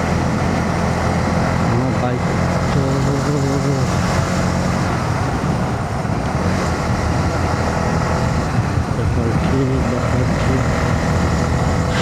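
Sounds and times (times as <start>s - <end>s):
wind and road noise: 0.0s - 12.0s
motorcycle engine running: 5.7s - 12.0s.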